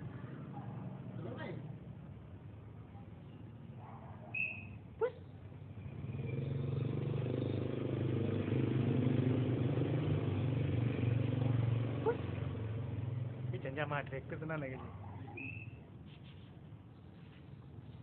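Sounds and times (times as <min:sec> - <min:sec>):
vehicle engine humming: 0:05.3 - 0:18.0.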